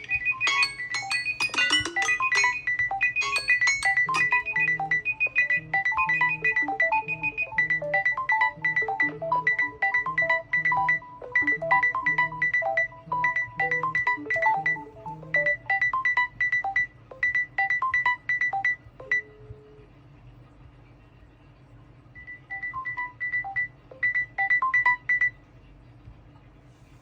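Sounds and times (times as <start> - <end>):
smartphone ringtone melody: 0.0 - 19.2.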